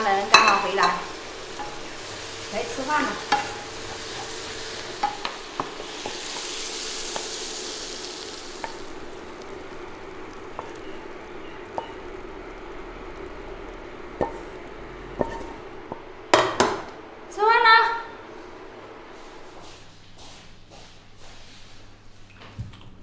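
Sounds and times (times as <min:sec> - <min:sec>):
onions sizzling in a wok: 0:00.0 - 0:17.5.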